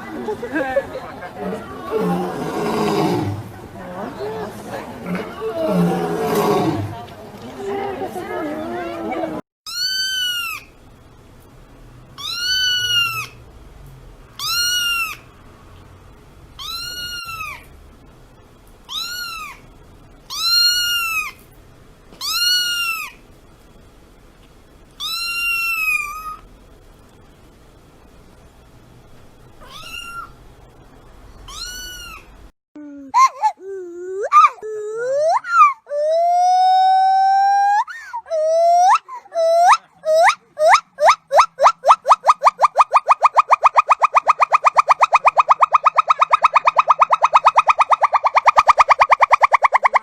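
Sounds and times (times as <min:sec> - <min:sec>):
cat meowing: 0:12.2 - 0:13.3, 0:16.6 - 0:17.6, 0:18.9 - 0:19.6, 0:22.2 - 0:23.2, 0:25.0 - 0:26.4, 0:29.6 - 0:30.4, 0:31.5 - 0:32.3.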